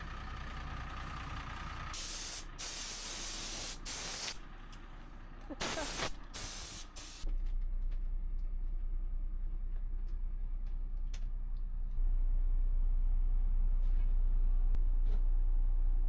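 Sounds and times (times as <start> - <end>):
spraying hiss bursts: 2.0 - 4.4, 5.6 - 7.2
steady low hum: 4.3 - 16.0.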